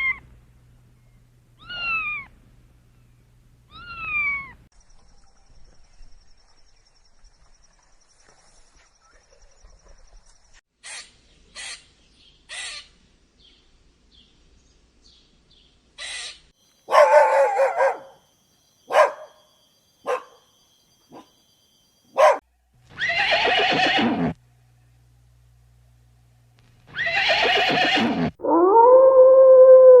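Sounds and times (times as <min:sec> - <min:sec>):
animal calling: 0:01.6 - 0:02.3, 0:03.7 - 0:04.6, 0:26.9 - 0:30.0.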